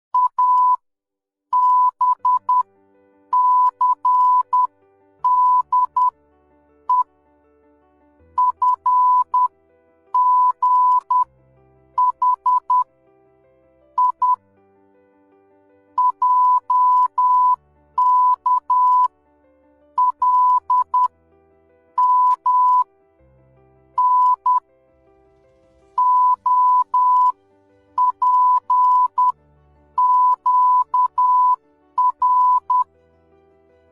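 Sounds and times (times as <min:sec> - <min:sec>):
high-pitched morse code beeps: 0:01.6 - 0:02.6, 0:03.4 - 0:06.1, 0:08.4 - 0:09.5, 0:10.2 - 0:11.3, 0:12.0 - 0:12.8, 0:14.0 - 0:14.4, 0:16.0 - 0:19.1, 0:20.0 - 0:21.1, 0:22.0 - 0:22.8, 0:24.0 - 0:24.6, 0:26.0 - 0:27.3, 0:28.0 - 0:29.3, 0:30.0 - 0:32.9.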